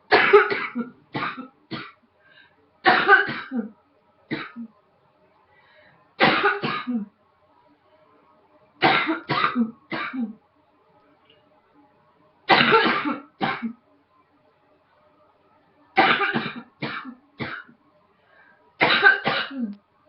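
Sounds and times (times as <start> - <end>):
woman coughing: 0.1 - 2.0, 2.9 - 3.7, 4.3 - 4.7, 6.2 - 7.1, 8.9 - 10.4, 12.5 - 13.8, 16.0 - 17.7, 18.8 - 19.8.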